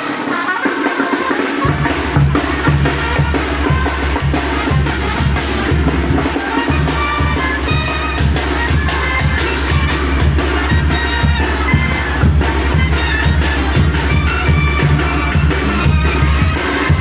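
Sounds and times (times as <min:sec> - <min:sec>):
dance music with drum beat: 0:00.0 - 0:17.0
heavy bass line: 0:01.7 - 0:17.0.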